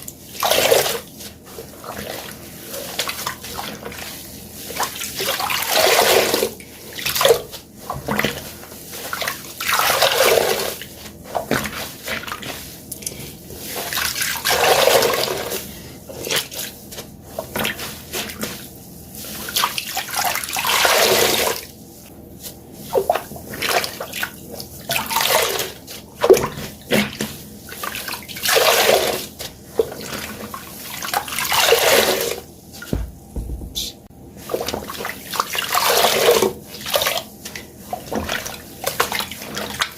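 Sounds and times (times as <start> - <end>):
wet sponges squeezed gushing water: 0.2 - 21.7, 22.4 - 32.9, 34.4 - 39.9.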